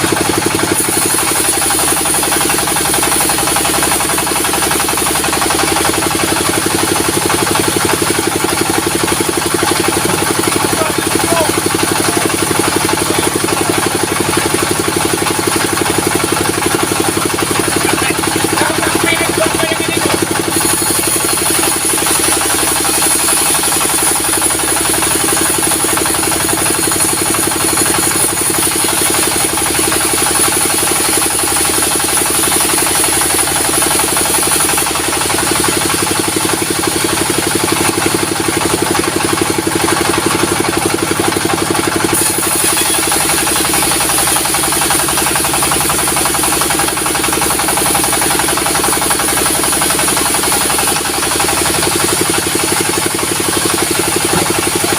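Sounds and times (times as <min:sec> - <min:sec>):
engine hum: 0:40.8 - 0:54.9
high saw whine: 0:42.1 - 0:54.9.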